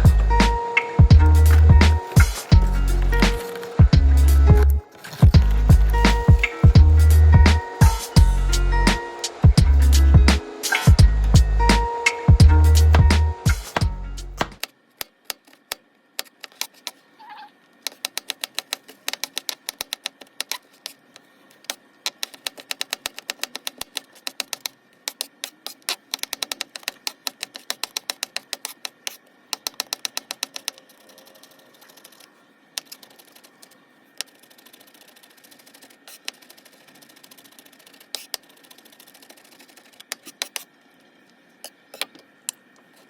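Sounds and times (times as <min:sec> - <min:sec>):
rapid sharp clicks: 0:21.7 - 0:40.7.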